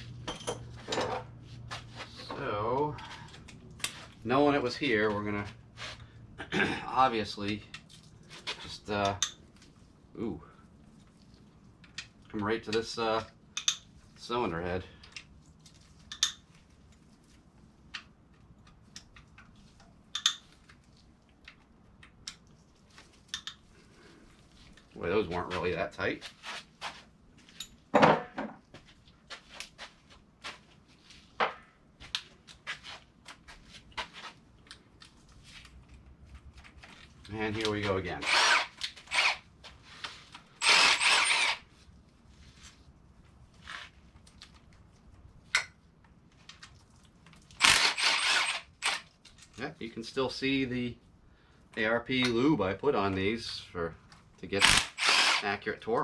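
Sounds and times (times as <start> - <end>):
impact wrench bursts: 38.2 - 39.4, 40.6 - 41.7, 47.6 - 49.0, 54.6 - 55.6.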